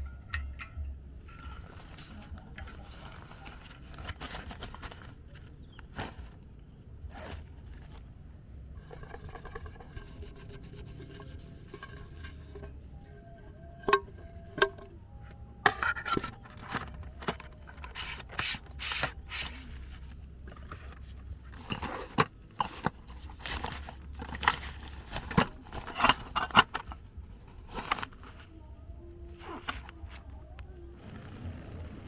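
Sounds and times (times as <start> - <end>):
sharp clicks and knocks: 0.0 - 1.6
handling scrapes and rubs: 0.0 - 30.6.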